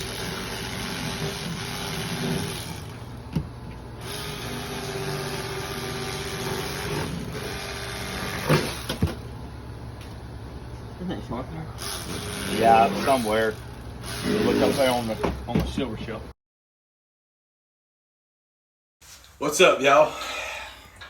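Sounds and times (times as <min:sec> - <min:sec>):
motor running steadily: 0:00.0 - 0:16.3.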